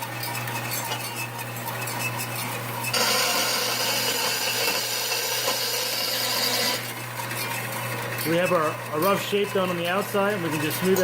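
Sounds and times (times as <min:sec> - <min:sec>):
bandsaw motor hum: 0:00.0 - 0:11.0
bandsaw blade cutting steel: 0:00.4 - 0:07.5.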